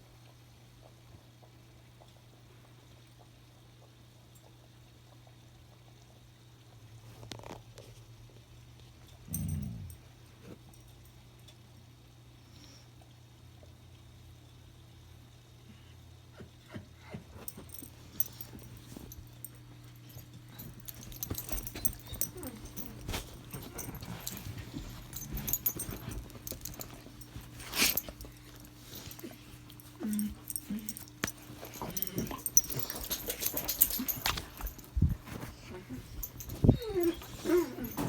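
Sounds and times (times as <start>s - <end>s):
steady low hum: 17.6s - 38.0s
dog whimpering: 21.4s - 23.1s, 35.6s - 38.0s.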